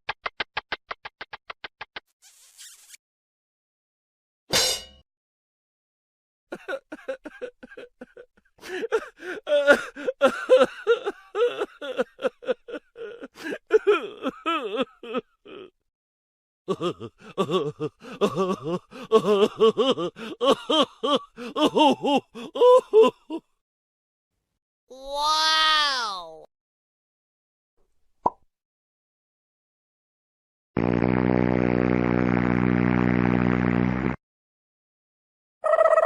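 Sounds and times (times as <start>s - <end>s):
person laughing in bursts: 6.5s - 15.7s, 16.7s - 23.4s.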